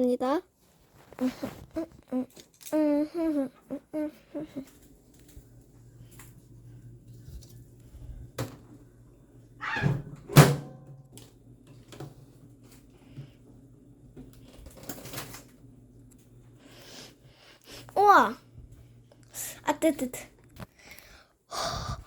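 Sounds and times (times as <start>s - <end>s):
low steady hum: 0.6s - 22.0s
microwave door slamming: 9.7s - 10.8s.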